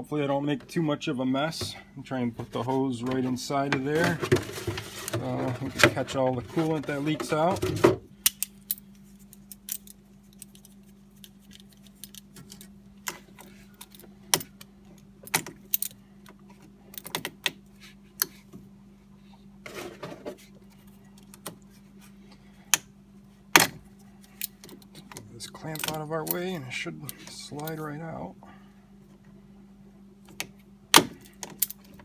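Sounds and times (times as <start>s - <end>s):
faint steady hum: 0.0s - 32.0s.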